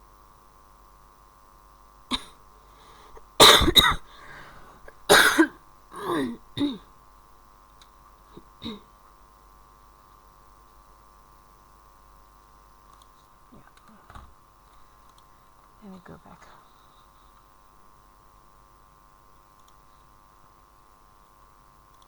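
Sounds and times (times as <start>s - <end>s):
person clearing throat: 2.1s - 2.4s, 3.4s - 4.1s, 4.9s - 6.9s, 8.4s - 8.9s
person coughing: 2.1s - 2.4s, 3.4s - 4.1s, 4.9s - 6.9s, 8.6s - 8.9s.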